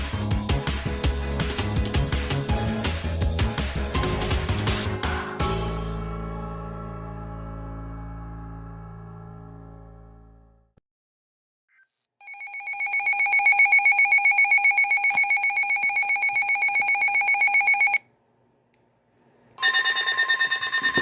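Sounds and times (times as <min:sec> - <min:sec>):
rapidly pulsing alarm tone: 0:19.6 - 0:21.0.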